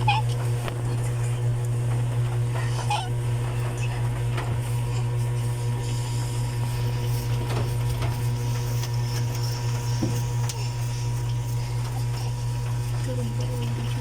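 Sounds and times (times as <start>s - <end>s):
low appliance hum: 0.0s - 14.0s.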